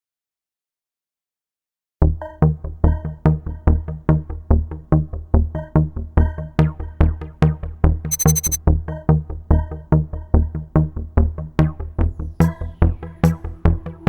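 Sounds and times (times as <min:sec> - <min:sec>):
high-pitched trill: 0:08.1 - 0:08.6
synth tones: 0:08.1 - 0:08.6.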